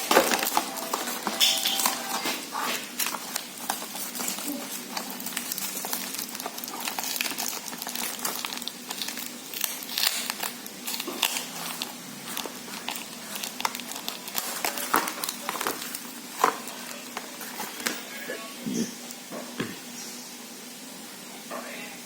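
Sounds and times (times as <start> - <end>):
plastic packaging crinkling: 0.0 - 18.1
small clicks and crackles: 3.0 - 18.0.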